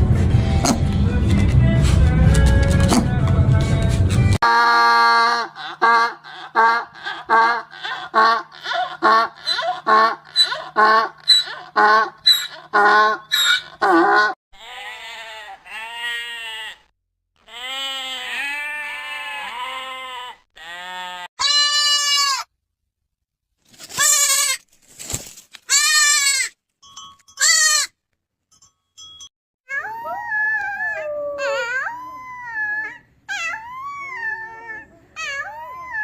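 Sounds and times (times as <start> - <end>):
high long animal cries: 4.4 - 16.8, 17.4 - 22.5, 29.7 - 36.0
young animal bleating: 14.6 - 22.5, 23.9 - 24.6, 25.7 - 26.5, 27.4 - 27.9.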